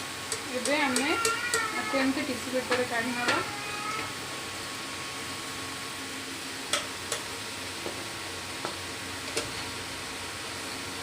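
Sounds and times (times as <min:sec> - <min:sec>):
oil sizzling in a pan: 0:00.0 - 0:11.0.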